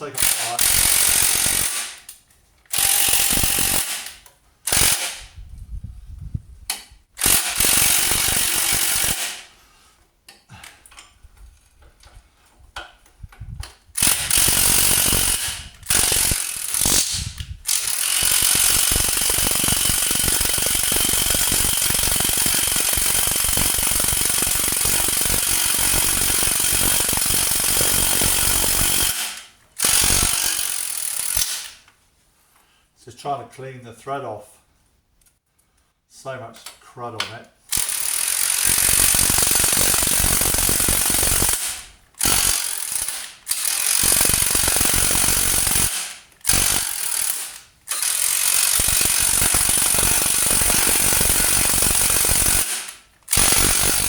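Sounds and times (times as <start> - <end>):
impact driver hammering: 2.7 - 5.3, 14.0 - 31.8.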